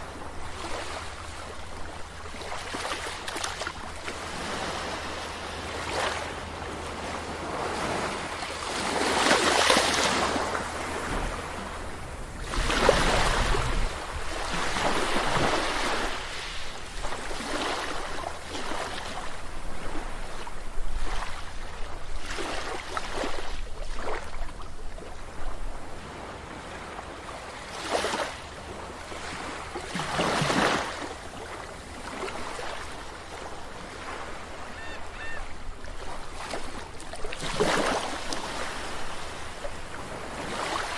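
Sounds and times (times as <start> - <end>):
sea waves breaking on beach: 0.0 - 40.9
faint high call: 34.5 - 35.6.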